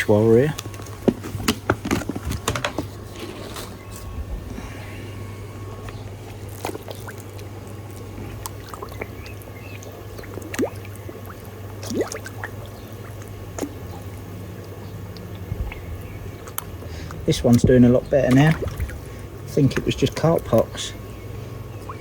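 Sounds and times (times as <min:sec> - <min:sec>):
steady low hum: 0:00.0 - 0:22.0
fish slurping and splashing: 0:04.6 - 0:22.0
running water: 0:05.9 - 0:22.0.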